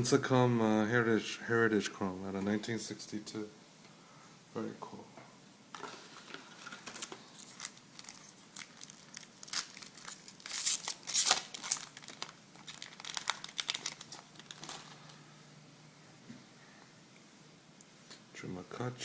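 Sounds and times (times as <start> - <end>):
wrapper tearing and crinkling: 6.3 - 15.2.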